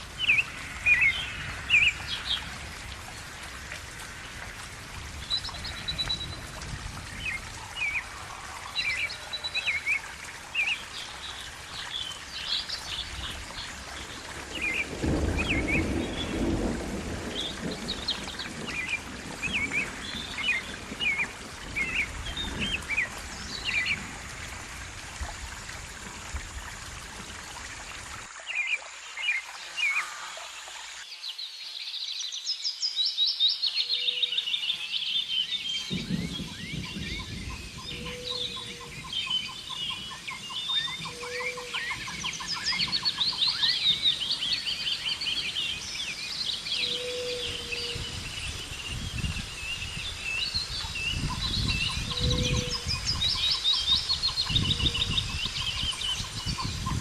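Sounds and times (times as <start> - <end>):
songbirds chirping and singing: 31.2 - 57.0.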